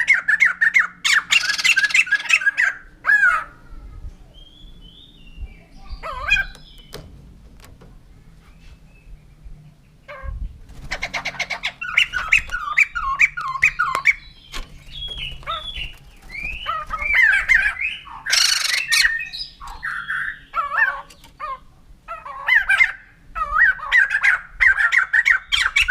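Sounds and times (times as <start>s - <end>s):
bird cackling calls: 0.0s - 3.6s, 10.1s - 25.9s.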